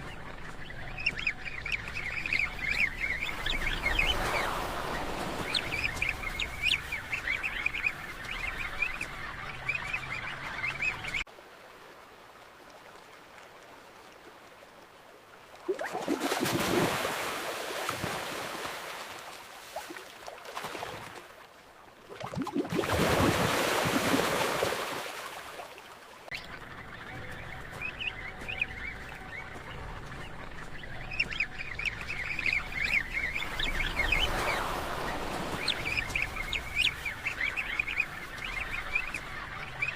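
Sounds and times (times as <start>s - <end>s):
rushing water underwater: 15.4s - 21.3s, 22.0s - 26.3s.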